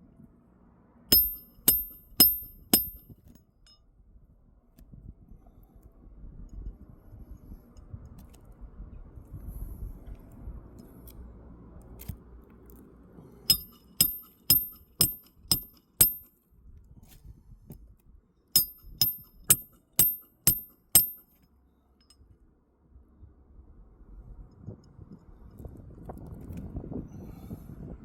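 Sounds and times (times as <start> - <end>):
hammer striking metal: 1.1 - 3.2, 13.5 - 16.4, 18.6 - 21.4.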